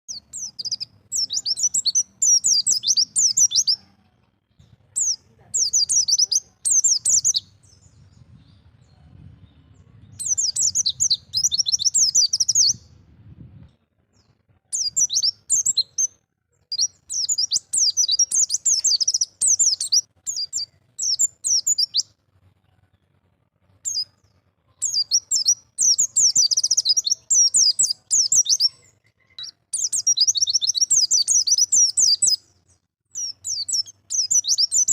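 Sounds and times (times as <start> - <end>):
bird twittering: 0.1 - 3.8, 5.0 - 7.6, 10.2 - 12.8, 14.7 - 16.1, 16.7 - 22.1, 24.8 - 32.4, 33.2 - 34.9.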